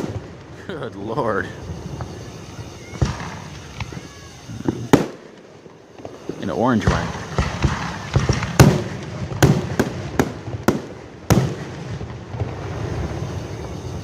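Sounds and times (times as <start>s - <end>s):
fireworks bangs: 0.0s - 14.0s
fireworks rumble and crackle: 0.0s - 14.0s.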